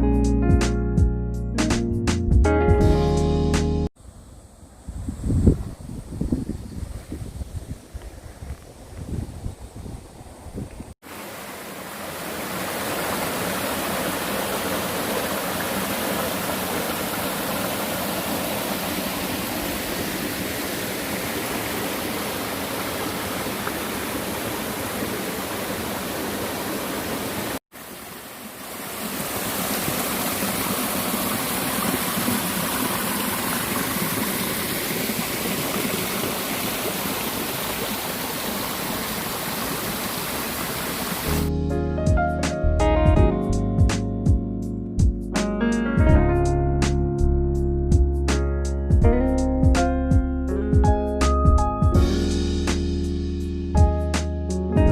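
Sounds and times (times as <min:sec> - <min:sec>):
stream rushing over rocks: 0:11.0 - 0:41.5.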